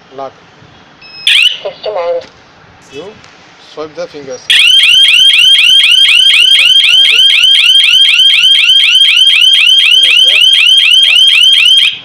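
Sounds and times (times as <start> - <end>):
burglar alarm siren chirping: 1.0 - 1.7, 4.5 - 12.0.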